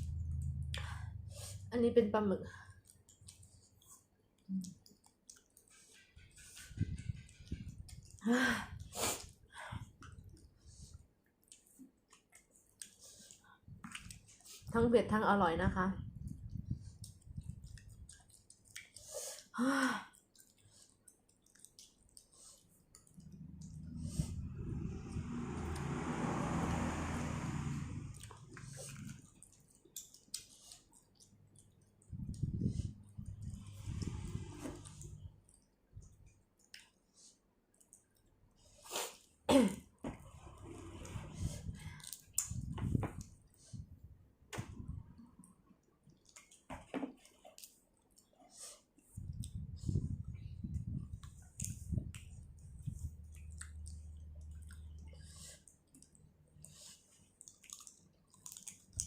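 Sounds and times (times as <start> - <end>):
low rumble: 0.0 - 2.0, 23.1 - 29.4, 32.2 - 35.4, 40.1 - 45.2
wet squishy chewing: 2.8 - 6.4, 10.0 - 14.7, 16.2 - 19.5, 20.1 - 26.0, 28.1 - 39.4, 41.7 - 43.9, 45.0 - 49.9, 50.7 - 59.0.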